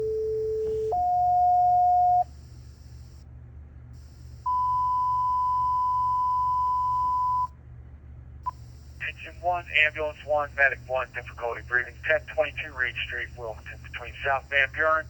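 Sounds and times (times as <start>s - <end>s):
faint low hum: 0.0s - 15.0s
long high steady tone: 4.0s - 7.5s, 8.5s - 15.0s.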